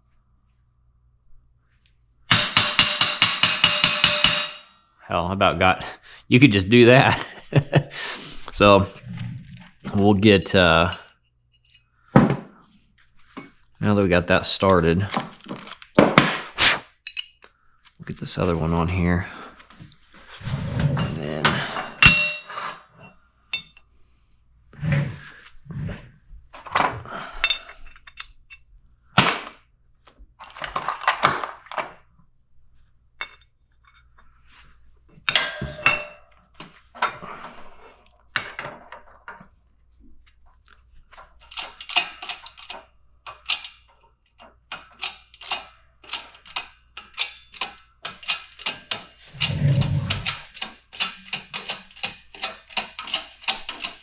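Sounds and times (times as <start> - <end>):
metal tools knocking and clinking: 2.3 - 4.7, 17.0 - 17.4, 21.4 - 22.6, 23.5 - 23.8, 26.7 - 29.6, 30.4 - 31.8, 33.2 - 34.2, 35.2 - 36.4, 41.4 - 54.0.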